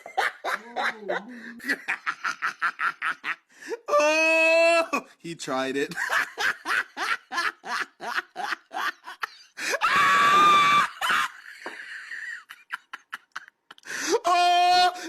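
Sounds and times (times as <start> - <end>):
loud scream: 9.7 - 11.3, 14.2 - 15.0.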